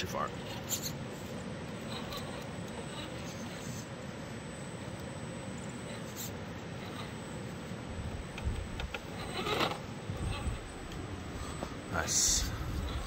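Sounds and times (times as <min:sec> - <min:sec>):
toy car motor running: 0:00.0 - 0:04.0, 0:08.7 - 0:10.9, 0:12.0 - 0:13.0.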